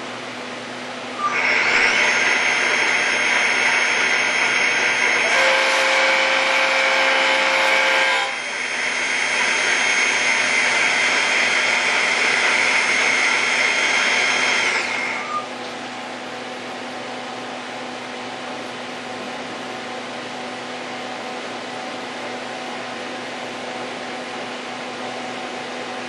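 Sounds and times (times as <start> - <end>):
machine hum: 0.0 - 16.0
cutting and coolant spray hiss: 1.2 - 15.3
lathe spindle whining: 1.2 - 15.5.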